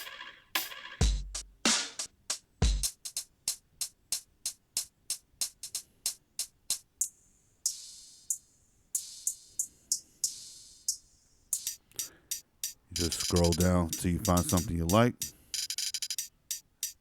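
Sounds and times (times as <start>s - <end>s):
closed hi-hats: 0.0s - 17.0s
hissy hi-hat hits: 0.0s - 17.0s.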